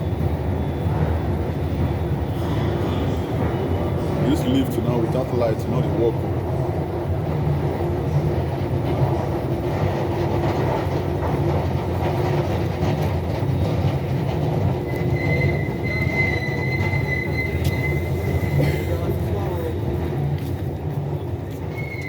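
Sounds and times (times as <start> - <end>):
train rumbling: 0.0 - 22.0
high wheel squeal: 14.6 - 20.2, 21.5 - 22.0.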